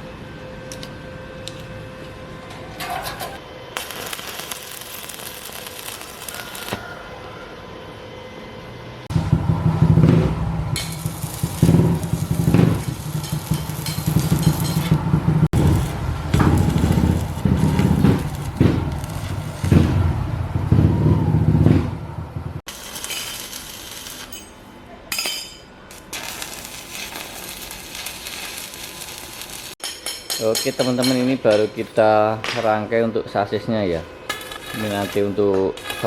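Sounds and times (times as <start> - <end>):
welding crackle and sizzle: 3.3 - 6.8, 9.1 - 20.2, 22.7 - 30.2, 34.3 - 36.0
hissing: 3.8 - 6.8, 9.1 - 20.6
steel parts clattering: 10.8 - 15.0, 22.8 - 31.8.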